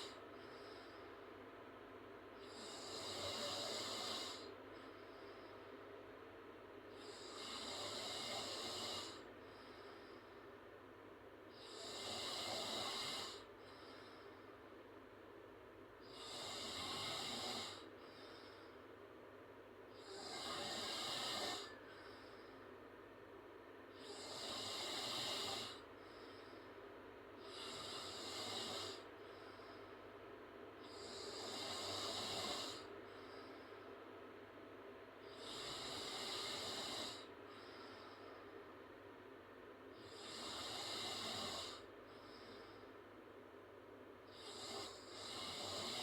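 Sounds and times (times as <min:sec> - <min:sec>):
girl snoring: 0:02.4 - 0:04.5, 0:07.0 - 0:09.2, 0:11.6 - 0:13.5, 0:16.1 - 0:17.8, 0:20.0 - 0:21.8, 0:24.0 - 0:25.8, 0:27.5 - 0:29.0, 0:30.9 - 0:32.9, 0:35.3 - 0:37.3, 0:44.3 - 0:46.0.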